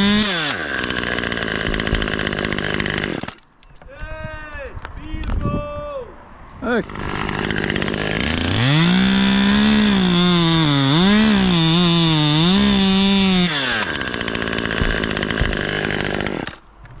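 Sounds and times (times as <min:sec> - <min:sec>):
chainsaw revving: 0:00.0 - 0:03.4, 0:06.8 - 0:16.7.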